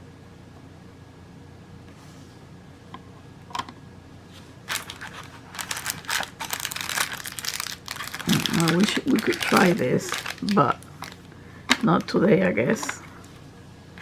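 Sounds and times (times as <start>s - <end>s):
packaging rustling: 4.6s - 12.2s.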